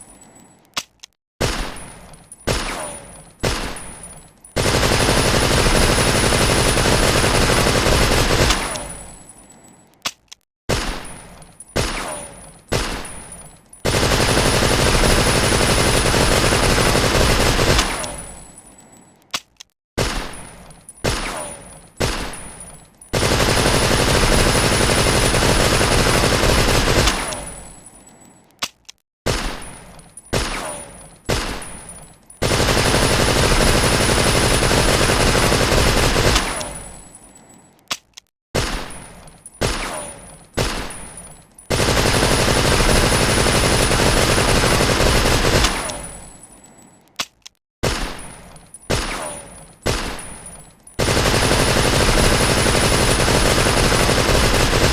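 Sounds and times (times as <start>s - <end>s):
submachine gun firing: 4.6s - 9.0s, 13.8s - 18.3s, 23.1s - 27.6s, 32.4s - 37.0s, 41.7s - 46.2s, 48.9s - 54.9s.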